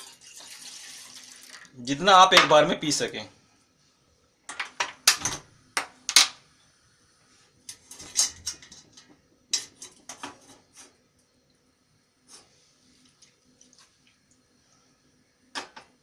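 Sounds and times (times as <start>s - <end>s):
pots and utensils clinking: 7.7s - 10.9s.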